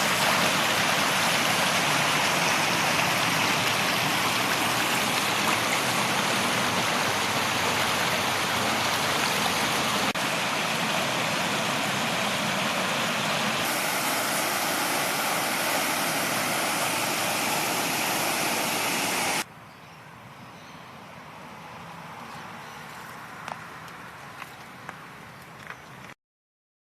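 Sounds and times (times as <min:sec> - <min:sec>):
floodwater rushing: 0:00.0 - 0:19.4.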